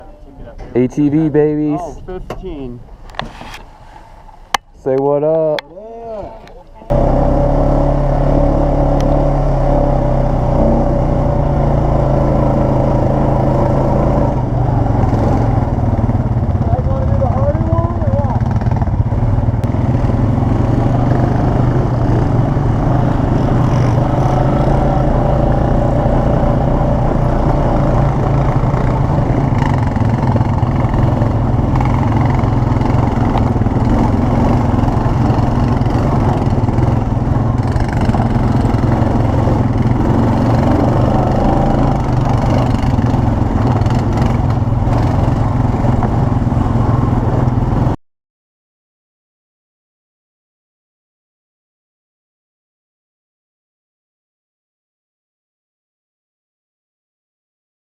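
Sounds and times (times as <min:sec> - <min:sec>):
atv engine running: 0:06.9 - 0:48.0.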